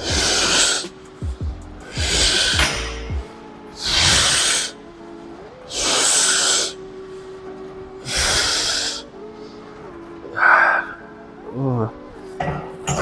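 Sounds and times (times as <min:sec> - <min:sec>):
heavy breathing: 0:00.0 - 0:01.0, 0:01.8 - 0:04.8, 0:05.7 - 0:11.2
background music: 0:00.0 - 0:13.0.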